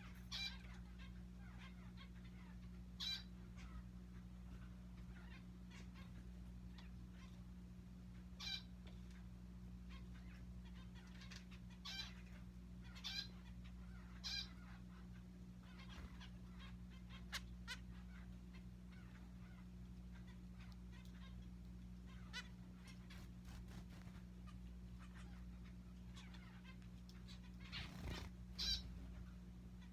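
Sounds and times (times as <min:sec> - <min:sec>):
steady low hum: 0:00.0 - 0:29.9
soft bird chirps: 0:09.9 - 0:29.9.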